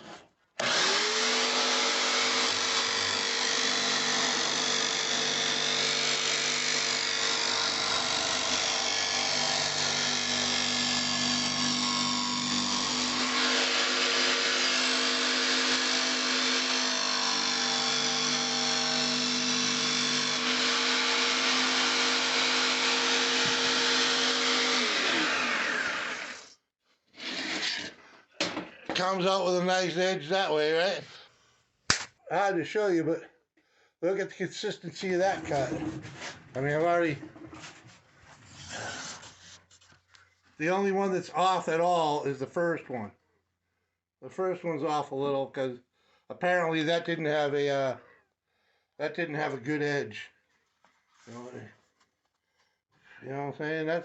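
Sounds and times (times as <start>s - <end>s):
jigsaw cutting wood: 0.6s - 26.6s
jigsaw motor winding down: 0.6s - 26.6s.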